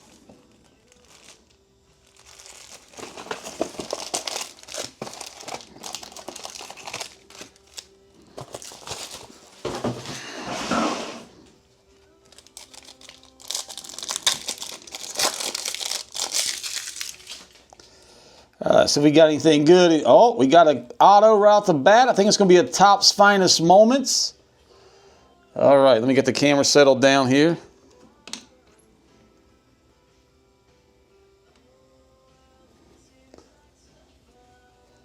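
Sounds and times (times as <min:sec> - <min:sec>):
card pack wrappers crinkling: 0:00.0 - 0:10.1, 0:12.0 - 0:17.8.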